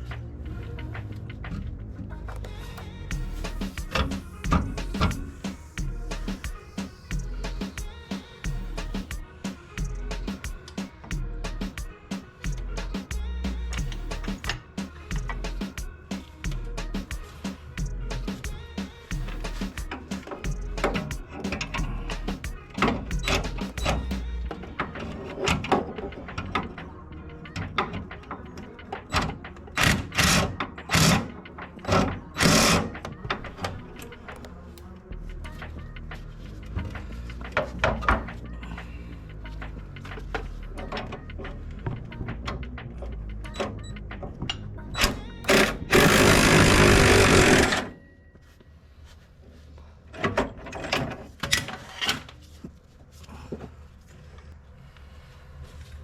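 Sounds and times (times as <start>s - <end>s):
loud noisy bursts: 45.5s - 47.9s
power tool running: 45.5s - 47.9s.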